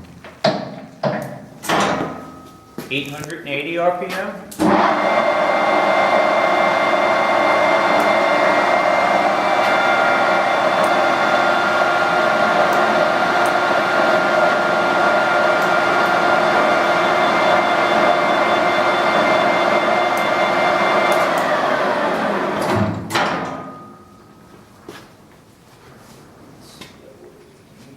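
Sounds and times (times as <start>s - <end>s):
lathe running: 4.6s - 22.7s.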